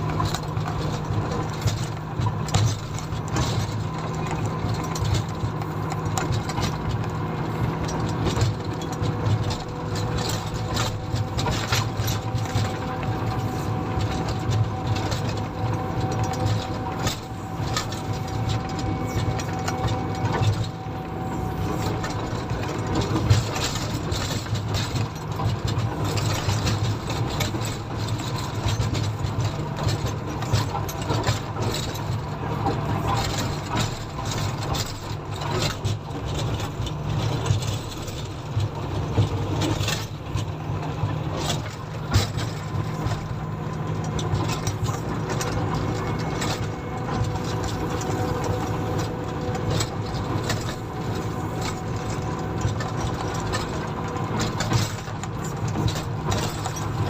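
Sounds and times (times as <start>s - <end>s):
diesel engine running: 0.0s - 57.0s
machine rattling and knocking: 0.0s - 57.0s.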